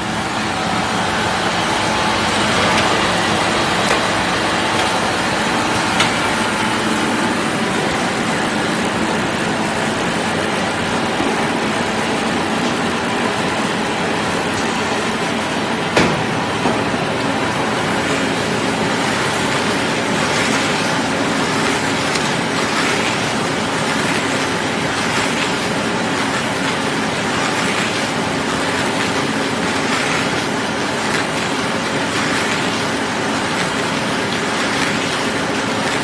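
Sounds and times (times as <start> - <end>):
baler machine running: 0.0 - 25.0.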